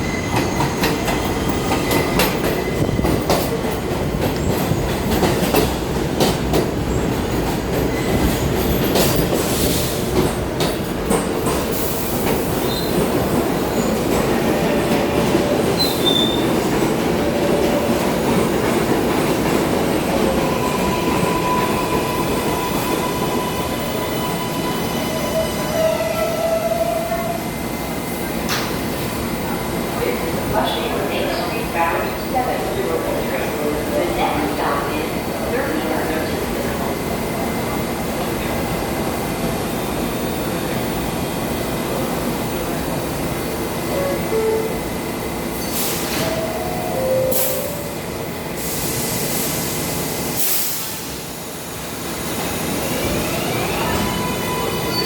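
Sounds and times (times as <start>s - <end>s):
subway train rumbling: 0.0s - 55.0s
wheel squeals: 15.8s - 16.5s.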